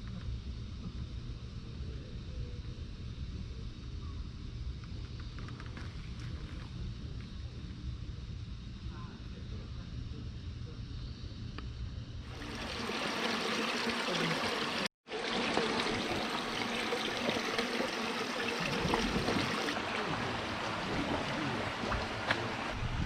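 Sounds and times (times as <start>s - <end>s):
stream flowing: 12.3s - 22.8s.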